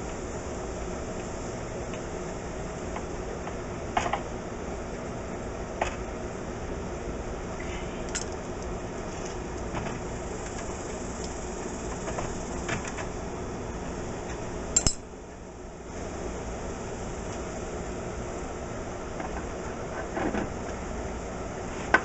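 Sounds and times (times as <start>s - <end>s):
fan-like hum: 0.0s - 22.0s
metal tools clinking: 8.1s - 8.4s, 14.8s - 15.0s.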